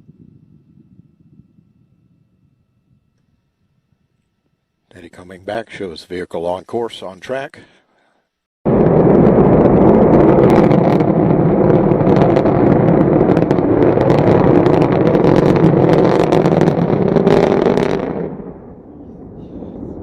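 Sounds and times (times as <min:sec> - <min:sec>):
rocket engine rumble: 0:08.7 - 0:20.0.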